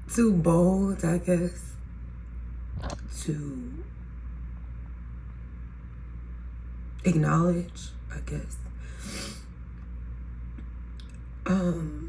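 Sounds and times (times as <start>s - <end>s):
steady low hum: 0.0s - 12.0s
woman humming: 11.5s - 12.0s.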